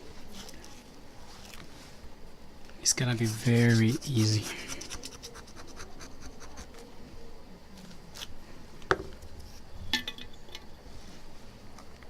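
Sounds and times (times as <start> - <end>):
plastic knife scraping glue: 3.0 - 6.7.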